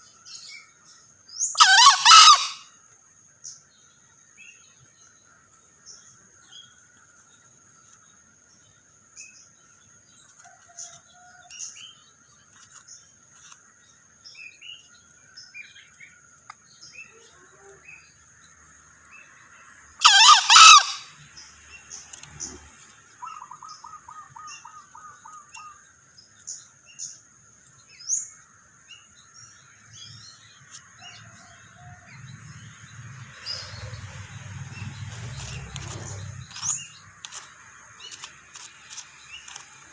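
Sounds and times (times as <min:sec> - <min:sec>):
small birds chirping: 0:00.0 - 0:39.9
junglefowl crowing: 0:01.6 - 0:02.7, 0:20.0 - 0:21.2.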